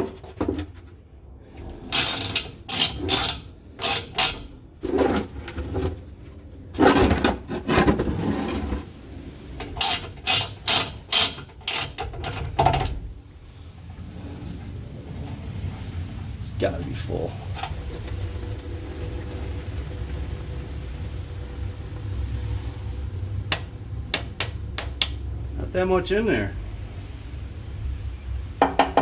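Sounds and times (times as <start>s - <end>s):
hand tool ratcheting: 1.8s - 4.5s, 9.6s - 12.9s.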